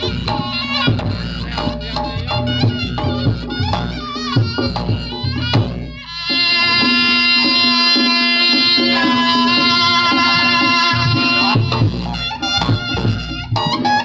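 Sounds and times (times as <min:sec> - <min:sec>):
drum strokes: 0:00.0 - 0:14.0
pitched percussion notes: 0:00.0 - 0:14.0
reed trumpet long note: 0:00.0 - 0:14.0.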